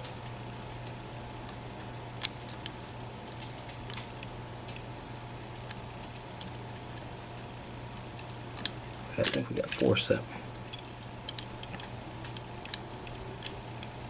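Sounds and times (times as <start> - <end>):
steady low hum: 0.0 - 14.0
lock pick clicking: 2.2 - 5.8, 6.4 - 7.2, 7.9 - 10.0, 10.7 - 14.0.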